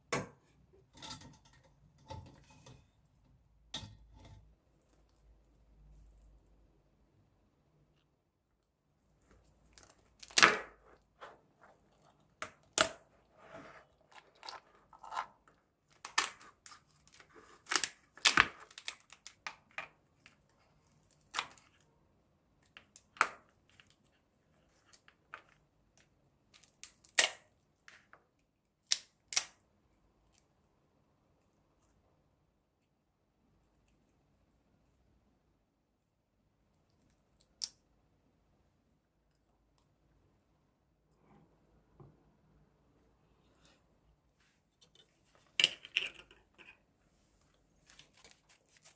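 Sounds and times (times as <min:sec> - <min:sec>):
crab shell cracking and tearing: 0:15.9 - 0:19.6, 0:26.5 - 0:27.5, 0:28.8 - 0:29.6.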